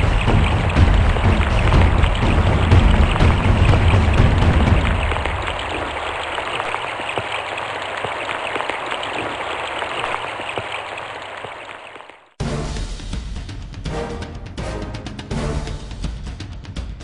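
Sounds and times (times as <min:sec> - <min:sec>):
low rumble: 0:00.0 - 0:06.5
rain falling: 0:00.0 - 0:12.4.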